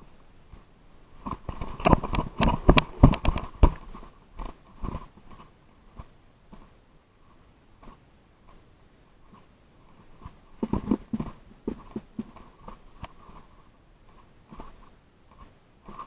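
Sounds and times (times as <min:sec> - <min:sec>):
crunching knocks and thumps: 0:01.2 - 0:05.1, 0:10.2 - 0:13.5.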